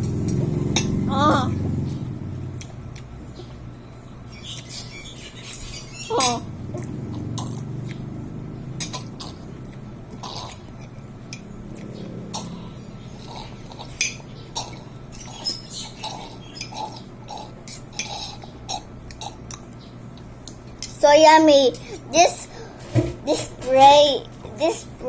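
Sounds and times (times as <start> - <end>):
utensils clinking against dishes: 0.0 - 1.5, 4.4 - 6.6, 8.7 - 11.5, 12.4 - 19.8, 21.6 - 24.8.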